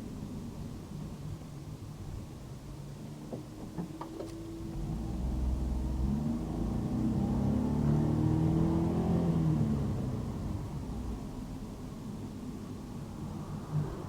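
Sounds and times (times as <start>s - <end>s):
car engine: 4.1s - 14.0s.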